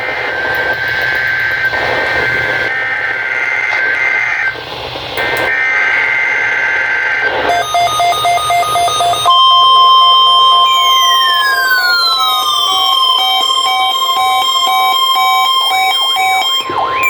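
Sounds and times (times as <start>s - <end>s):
radio static: 1.7s - 17.0s
buzzing digital data bursts: 7.5s - 17.0s
fast beeping tones: 7.5s - 17.0s.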